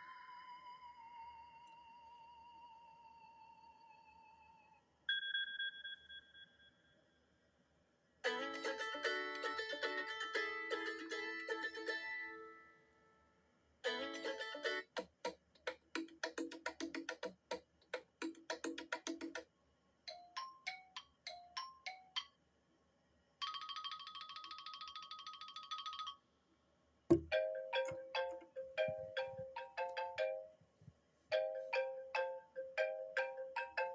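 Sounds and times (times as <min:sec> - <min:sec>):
plucked note ringtone: 0:27.1 - 0:29.4.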